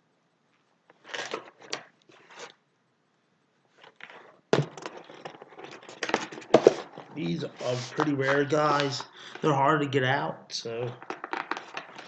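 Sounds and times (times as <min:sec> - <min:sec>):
packaging crinkling and crunching: 0:01.0 - 0:02.5, 0:11.0 - 0:12.0.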